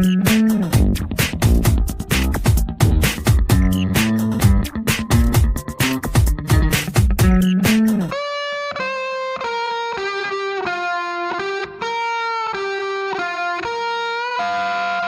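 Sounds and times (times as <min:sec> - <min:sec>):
electric guitar melody: 0:00.0 - 0:15.0.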